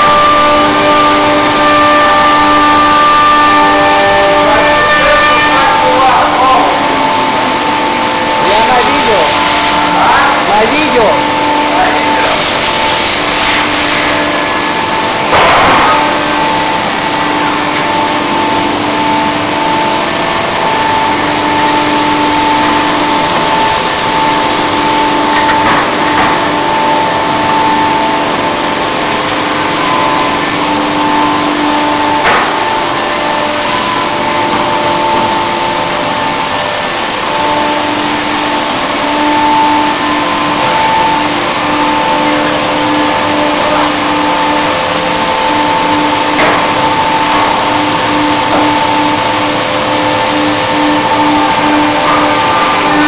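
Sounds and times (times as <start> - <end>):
milling machine motor whine: 0.0 - 53.0
sharp knock: 32.2 - 32.6.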